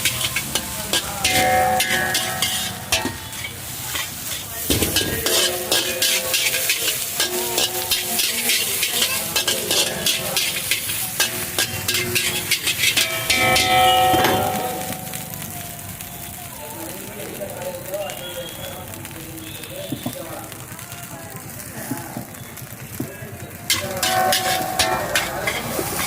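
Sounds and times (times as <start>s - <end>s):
metal ladle scraping a wok: 0.0s - 15.4s, 23.7s - 26.0s
rice sizzling in a wok: 0.0s - 26.0s.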